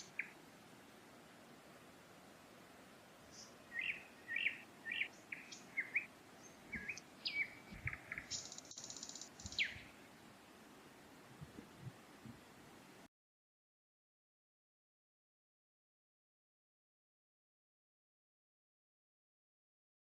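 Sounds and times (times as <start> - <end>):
songbird chirping and whistling: 0.0 - 0.4, 3.3 - 10.0
forest stream rushing: 0.0 - 13.1.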